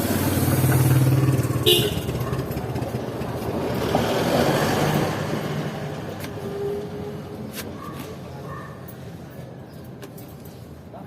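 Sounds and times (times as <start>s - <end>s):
motor vehicle passing: 0.0s - 8.4s.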